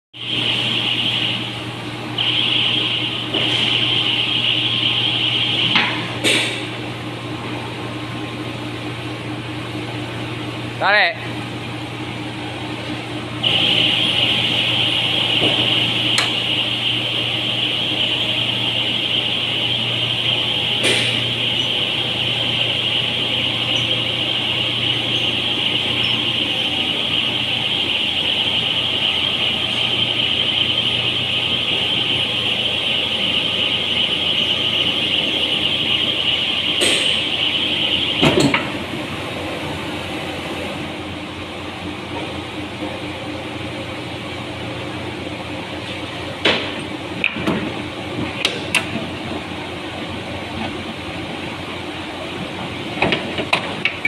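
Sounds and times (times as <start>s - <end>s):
machine whining and humming: 0.1s - 54.0s
machine clunk: 20.7s - 21.4s, 38.2s - 38.8s.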